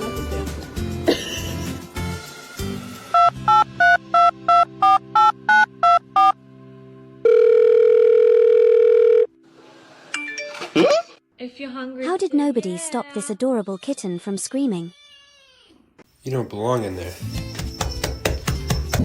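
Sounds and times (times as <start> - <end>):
telephone keypad beeps: 3.2 - 6.4
steady telephone tone: 7.2 - 9.3.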